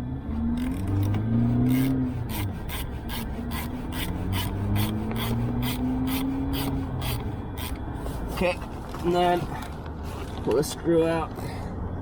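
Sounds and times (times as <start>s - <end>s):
low wavering hum: 0.0s - 10.4s
hand tool rasping strokes: 0.4s - 8.6s.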